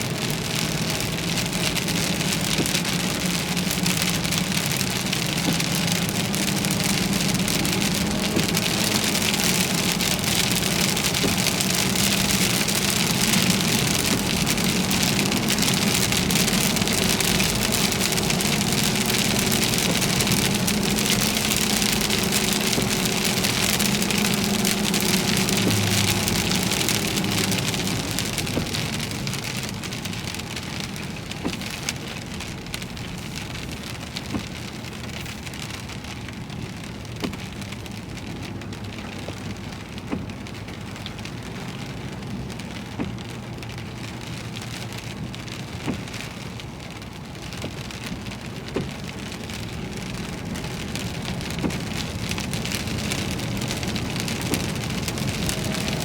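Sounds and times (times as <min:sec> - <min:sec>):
heavy rain on a vehicle: 0:00.0 - 0:56.0.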